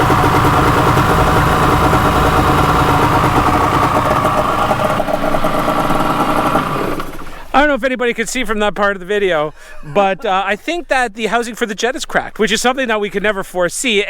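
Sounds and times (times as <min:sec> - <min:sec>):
watercraft engine idling: 0:00.0 - 0:07.7.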